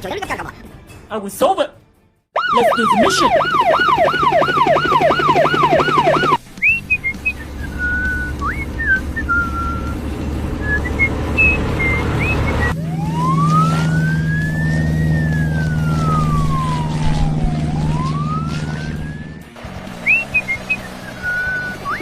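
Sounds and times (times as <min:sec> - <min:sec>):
siren wailing: 0:02.4 - 0:06.4, 0:11.3 - 0:22.0
engine hum: 0:02.4 - 0:22.0
short whistled chirps: 0:06.6 - 0:10.0, 0:20.0 - 0:22.0.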